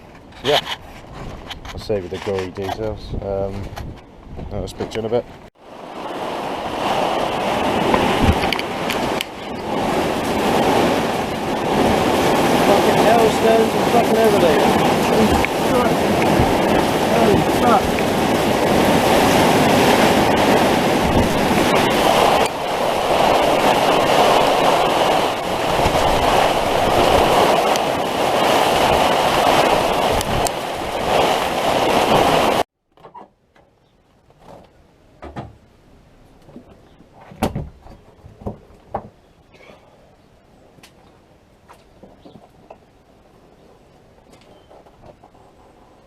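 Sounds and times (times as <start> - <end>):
heavy rain hissing: 5.6 - 32.7.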